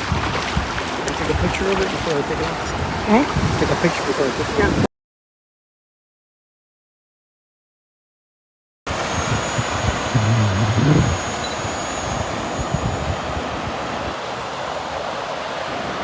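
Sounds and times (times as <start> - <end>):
wind buffeting microphone: 0.0 - 4.9, 8.9 - 14.5
surf: 8.9 - 16.0.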